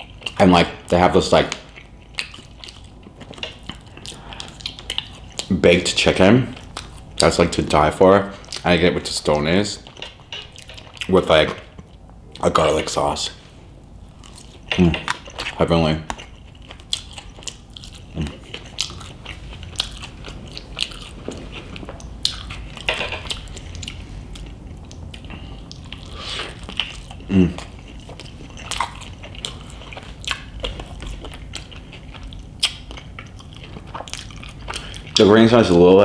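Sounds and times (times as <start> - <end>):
close-miked chewing: 0.0 - 36.0
lip smacks and mouth clicks: 23.3 - 35.2.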